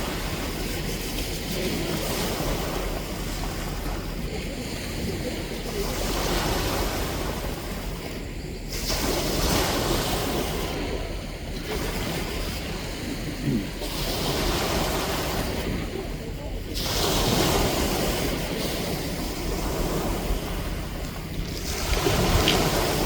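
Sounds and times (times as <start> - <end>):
ocean waves breaking on shore: 0.0 - 23.0
sharp water splash: 16.7 - 23.0.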